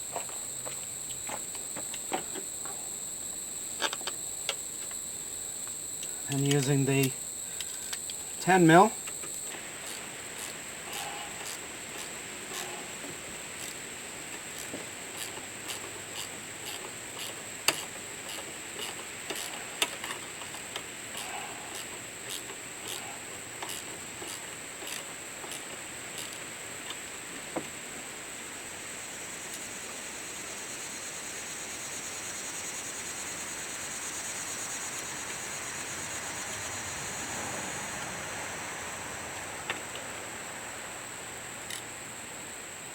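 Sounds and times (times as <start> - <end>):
ratchet wrench clicking: 0.3 - 27.0.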